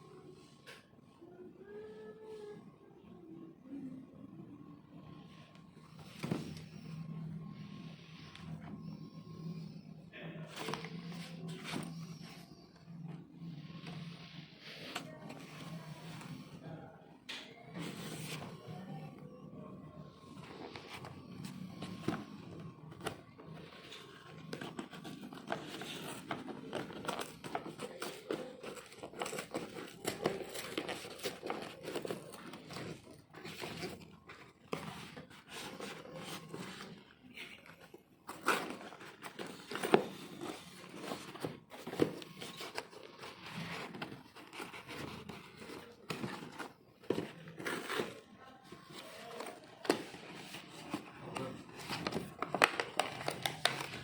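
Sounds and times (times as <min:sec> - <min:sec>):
plastic and paper crinkling: 0:10.4 - 0:16.8, 0:17.4 - 0:54.0.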